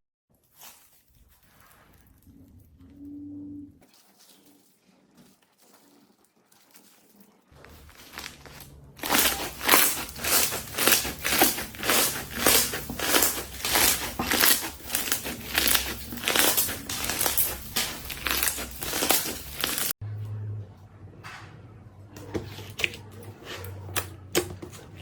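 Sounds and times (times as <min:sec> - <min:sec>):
slime squishing and crackling: 0:03.8 - 0:20.0.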